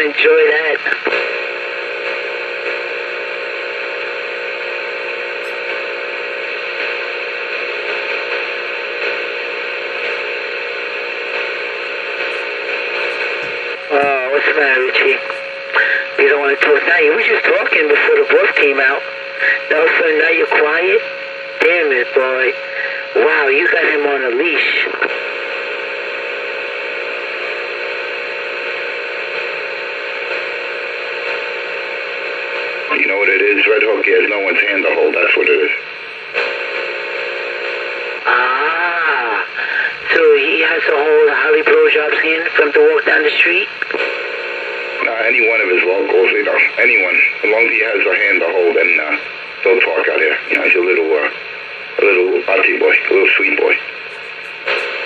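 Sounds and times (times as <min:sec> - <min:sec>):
radio hiss: 0:00.0 - 0:55.0.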